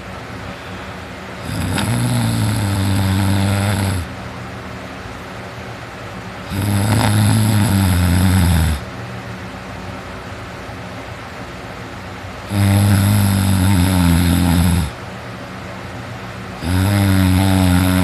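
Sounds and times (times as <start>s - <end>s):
person snoring: 1.4s - 4.1s, 6.4s - 8.8s, 12.4s - 15.0s, 16.6s - 18.0s.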